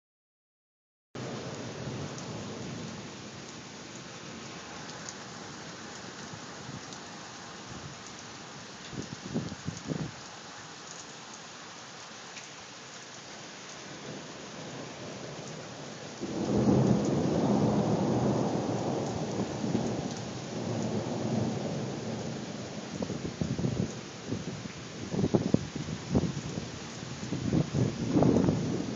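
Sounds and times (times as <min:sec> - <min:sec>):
rain hissing: 0:01.2 - 0:28.9
thunder rumbling: 0:16.2 - 0:26.6, 0:27.3 - 0:28.9.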